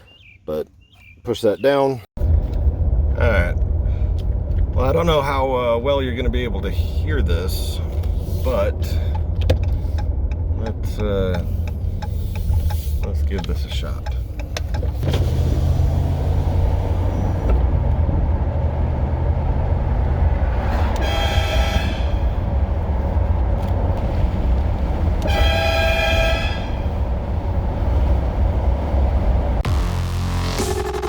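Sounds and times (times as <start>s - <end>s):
steady low rumble: 2.2s - 15.0s, 21.9s - 31.0s
truck air horn blasts: 20.8s - 22.4s, 25.2s - 26.9s.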